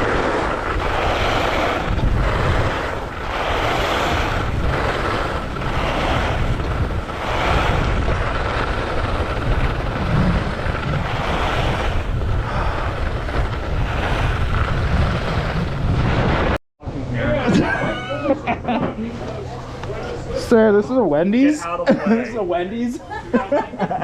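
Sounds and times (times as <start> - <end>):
skis hissing on snow: 0.0 - 16.1
wind buffeting microphone: 0.0 - 17.0.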